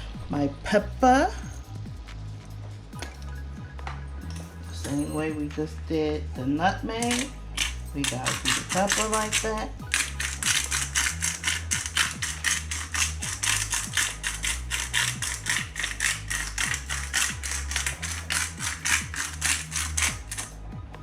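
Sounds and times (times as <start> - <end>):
background music: 0.0 - 21.0
spice grinder ratcheting clicks: 7.0 - 20.5.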